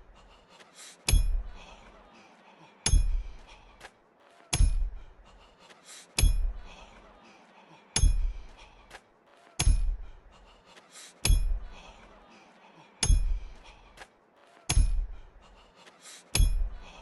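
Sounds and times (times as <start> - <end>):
hammer striking a nail: 1.1 - 1.4, 2.9 - 3.2, 4.5 - 5.0, 6.2 - 6.5, 8.0 - 8.4, 9.6 - 10.0, 11.2 - 11.6, 13.0 - 13.4, 14.7 - 15.1, 16.4 - 16.6.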